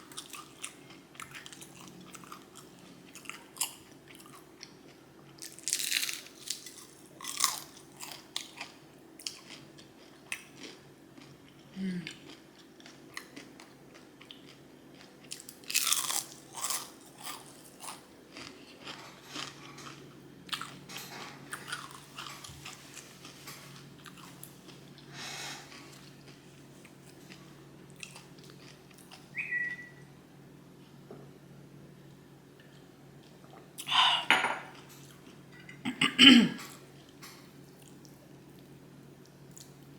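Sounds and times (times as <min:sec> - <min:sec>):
crunching fried food: 0:00.0 - 0:29.9.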